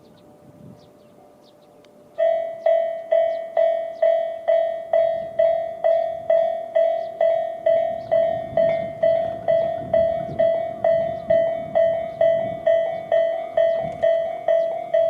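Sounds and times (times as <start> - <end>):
level crossing warning bell: 2.2 - 15.0.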